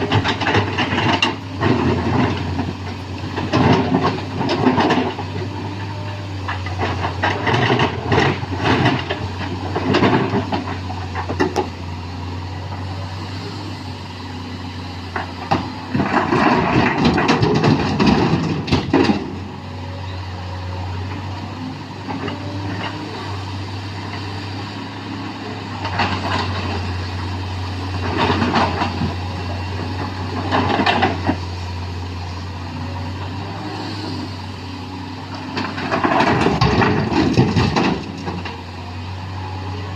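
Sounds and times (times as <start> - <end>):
rock clatter and rumble: 0.0 - 13.2, 14.0 - 20.1, 24.0 - 39.9
excavator diesel engine running: 0.0 - 39.9.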